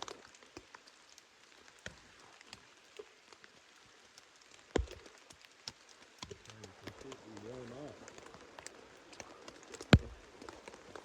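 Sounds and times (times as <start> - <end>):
rain pattering on fabric: 0.0 - 11.0.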